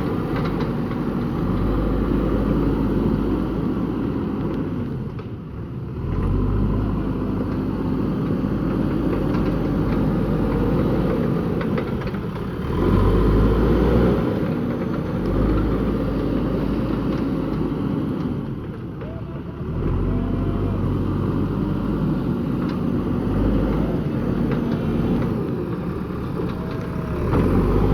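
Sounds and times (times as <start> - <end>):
diesel engine running: 19.6 - 27.9.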